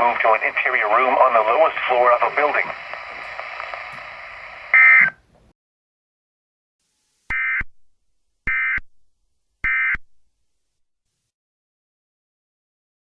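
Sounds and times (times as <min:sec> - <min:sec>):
radio static: 0:00.0 - 0:05.2.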